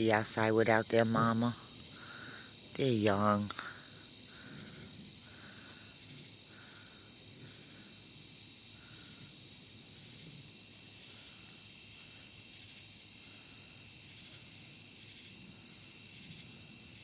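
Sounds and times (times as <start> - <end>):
crickets high-pitched trill: 0.0 - 17.0
insect pulsing call: 0.0 - 17.0.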